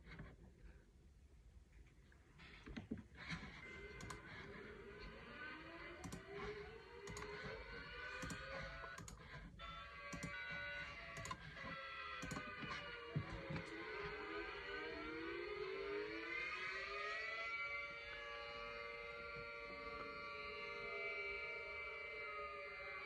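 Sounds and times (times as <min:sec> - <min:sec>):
warning sirens winding up: 0:03.2 - 0:23.0
sharp clicks: 0:04.0 - 0:04.3, 0:06.0 - 0:13.8.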